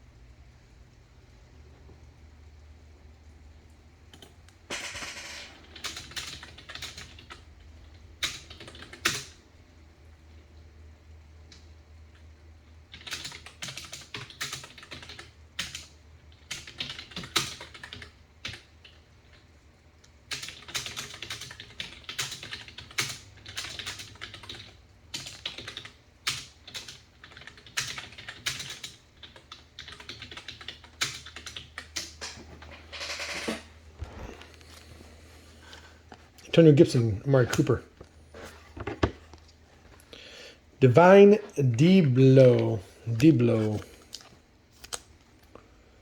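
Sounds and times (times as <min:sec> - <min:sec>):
low steady hum: 0:00.0 - 0:13.0, 0:29.0 - 0:46.0
computer keyboard typing: 0:04.1 - 0:09.4, 0:12.9 - 0:19.4, 0:20.0 - 0:32.4.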